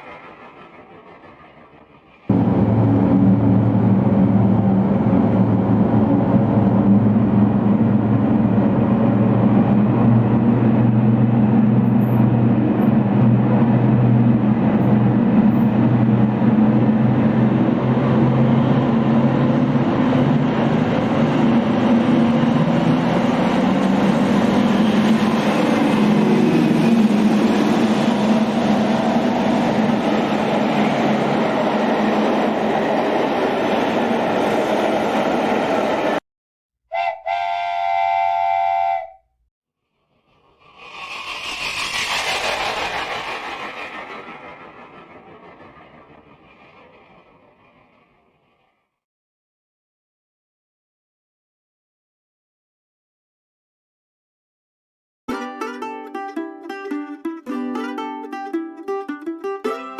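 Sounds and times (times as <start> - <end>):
train engine drone: 0.0 - 36.2, 40.1 - 48.8, 55.3 - 59.9
higher rattling noise: 40.3 - 48.7.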